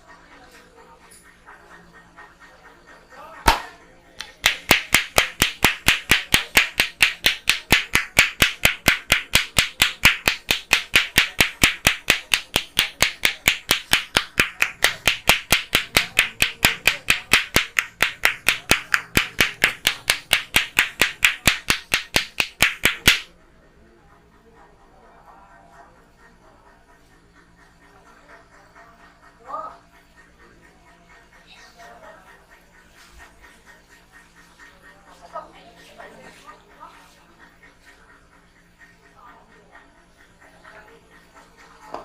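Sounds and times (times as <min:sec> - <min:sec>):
hands clapping in head massage: 0:03.5 - 0:23.3.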